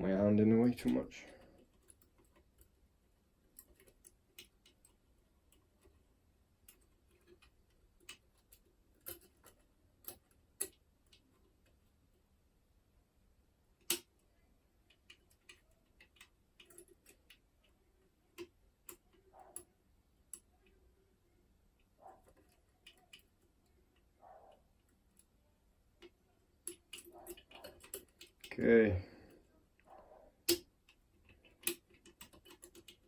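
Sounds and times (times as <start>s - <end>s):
lock picking clicks and scraping: 3.4s - 6.0s, 6.6s - 11.8s, 13.8s - 20.8s, 21.8s - 25.3s, 26.0s - 28.6s, 29.8s - 33.0s.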